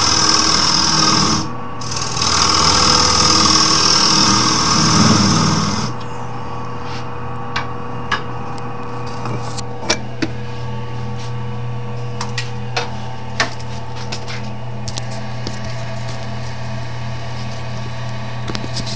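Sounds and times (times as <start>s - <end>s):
lathe motor hum: 0.0s - 6.1s
tool scraping spinning wood: 0.0s - 6.1s.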